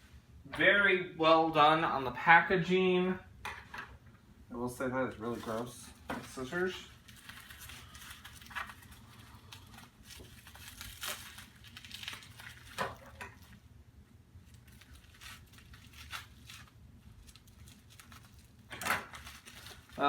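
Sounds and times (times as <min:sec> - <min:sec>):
plastic packaging crinkling and tearing: 0:05.1 - 0:13.7, 0:14.4 - 0:20.0.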